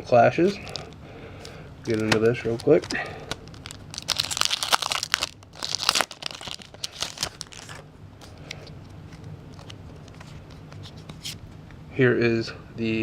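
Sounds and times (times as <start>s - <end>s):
foil wrapper crinkling and tearing: 0.5s - 7.8s.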